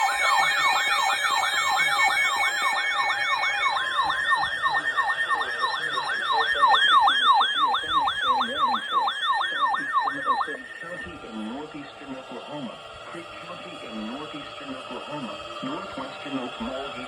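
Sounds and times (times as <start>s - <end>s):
electronic siren fast yelp: 0.0s - 11.2s
steady high tone: 0.0s - 17.0s.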